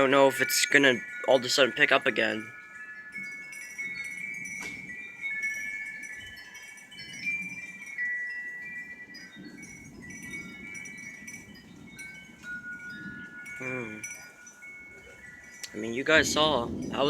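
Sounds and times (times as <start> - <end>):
wind chime ringing: 0.0 - 17.0
wind rushing: 15.2 - 17.0.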